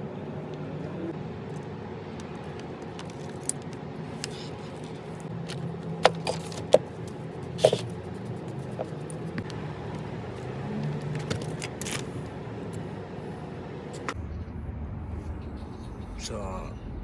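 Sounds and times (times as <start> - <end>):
steady low hum: 0.0 - 17.0.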